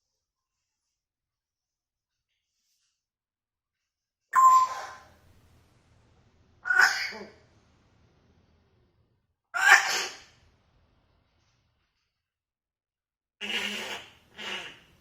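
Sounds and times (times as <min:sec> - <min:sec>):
parrot sneezing: 0:09.6 - 0:10.3, 0:13.4 - 0:15.0.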